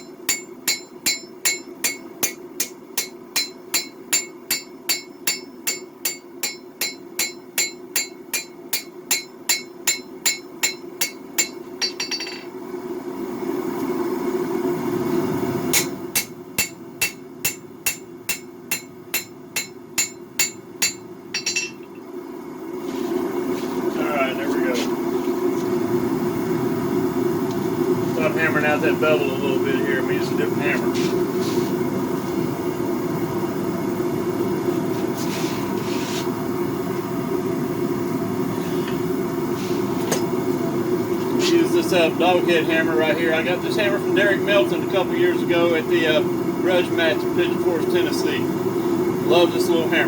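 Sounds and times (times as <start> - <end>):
hammer striking steel on anvil: 0.0 - 12.5, 15.7 - 22.0
forge burners rushing: 0.0 - 50.0.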